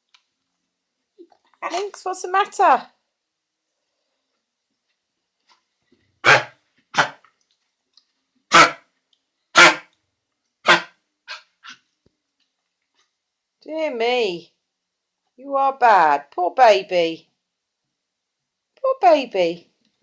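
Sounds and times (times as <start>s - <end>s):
dog honking cough: 6.2s - 7.2s, 8.5s - 8.8s, 9.6s - 9.8s, 10.7s - 11.4s.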